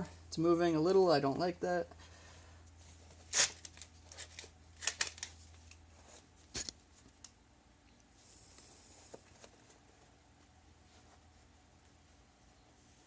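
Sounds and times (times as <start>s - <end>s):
small handling clicks and rustles: 2.6s - 7.4s.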